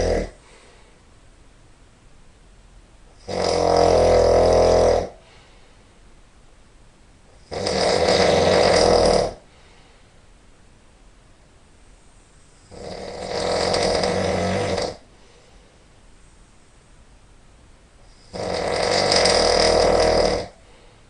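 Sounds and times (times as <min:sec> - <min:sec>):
person snoring loudly: 0:00.0 - 0:00.5, 0:03.2 - 0:05.2, 0:07.4 - 0:09.5, 0:12.7 - 0:15.1, 0:18.1 - 0:20.6.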